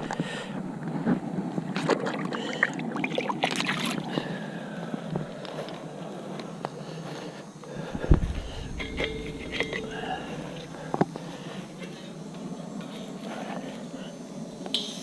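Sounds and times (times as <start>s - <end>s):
water splashing and sloshing: 1.7s - 4.1s.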